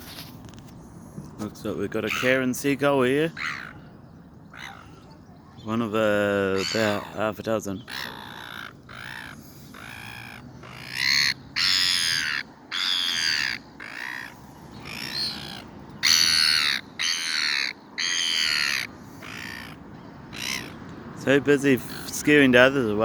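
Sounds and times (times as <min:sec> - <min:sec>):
gull squawking: 0:02.0 - 0:02.4, 0:03.3 - 0:03.8, 0:04.5 - 0:05.2, 0:06.4 - 0:20.8.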